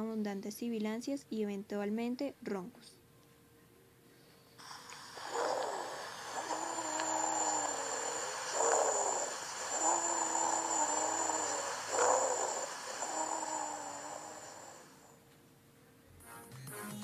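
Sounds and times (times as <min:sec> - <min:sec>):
noisy breathing: 0:04.1 - 0:15.2
whistling wheezes: 0:04.6 - 0:15.2.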